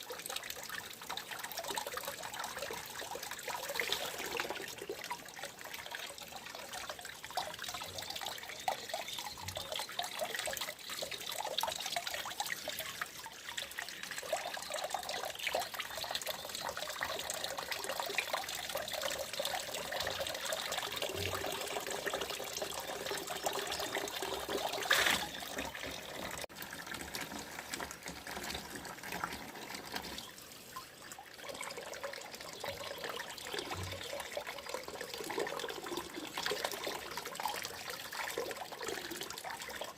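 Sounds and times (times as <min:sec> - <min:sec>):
water trickling and splashing: 0:00.0 - 0:39.9.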